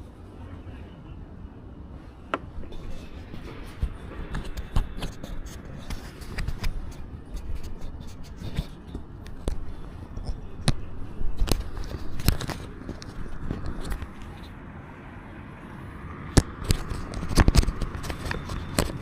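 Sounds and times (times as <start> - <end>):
sharp clicks and scrapes: 2.4 - 14.5, 16.3 - 19.0.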